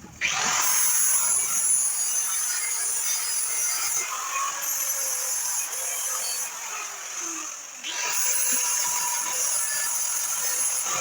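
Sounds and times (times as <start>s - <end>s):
angle grinder grinding steel: 7.8s - 11.0s.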